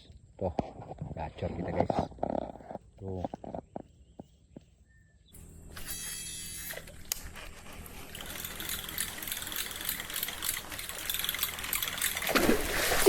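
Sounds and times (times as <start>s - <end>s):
fishing reel whirr: 5.4s - 13.0s
reel cranking fine ticking: 5.7s - 13.0s.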